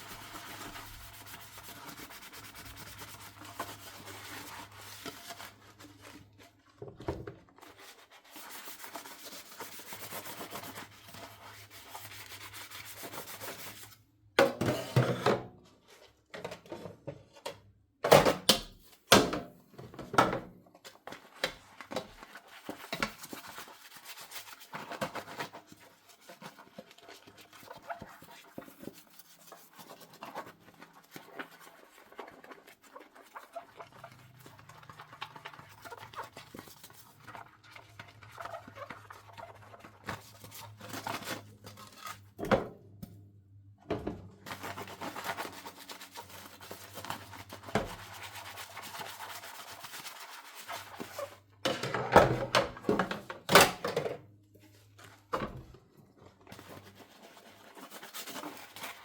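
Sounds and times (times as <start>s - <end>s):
sponge scrubbing dishes: 0.0s - 14.0s, 20.8s - 42.5s, 43.9s - 53.8s, 54.6s - 59.0s
dishes knocking and clattering: 14.4s - 15.5s, 51.7s - 54.2s.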